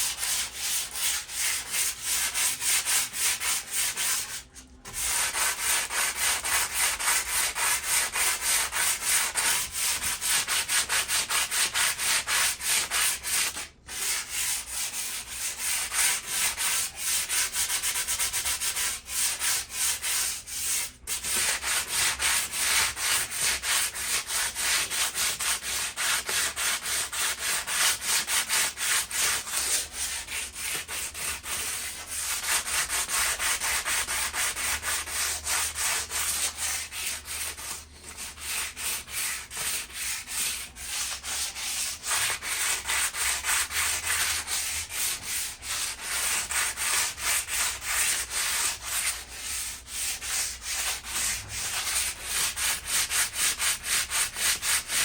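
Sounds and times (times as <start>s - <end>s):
sandpaper scrubbing metal: 0.0s - 55.0s.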